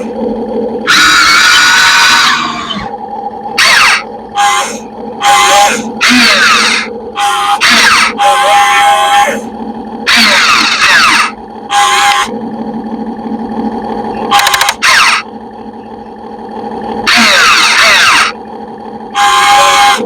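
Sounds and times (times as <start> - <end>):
toy excavator motor hum: 0.0 - 3.0, 3.6 - 12.4, 14.1 - 15.3, 17.0 - 18.4, 19.1 - 20.0
hydraulic hissing squeals: 0.9 - 2.9, 3.6 - 9.4.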